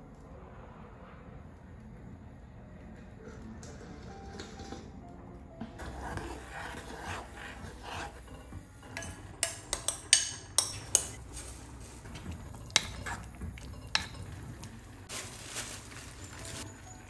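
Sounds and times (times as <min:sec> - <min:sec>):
metal utensils clinking on dishes: 0:08.9 - 0:14.8, 0:15.7 - 0:17.0.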